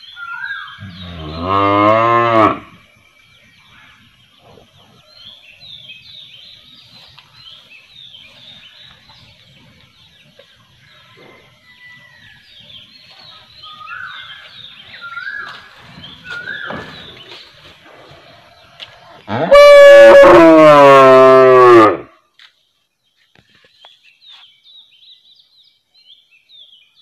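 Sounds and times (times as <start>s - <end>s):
cow mooing: 0.9s - 2.7s, 19.3s - 22.0s.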